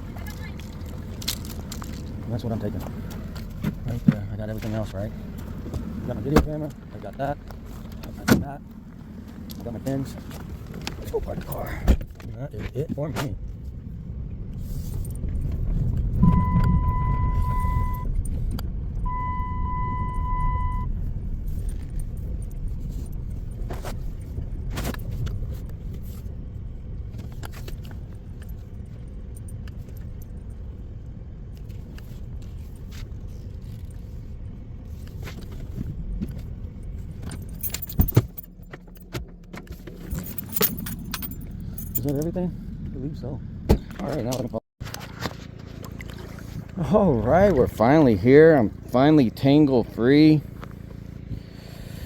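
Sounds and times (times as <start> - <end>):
car engine rumbling: 0.0 - 52.0
keys jingling: 0.3 - 2.2, 36.8 - 42.4
long electronic beeps: 16.2 - 18.1, 19.1 - 20.9.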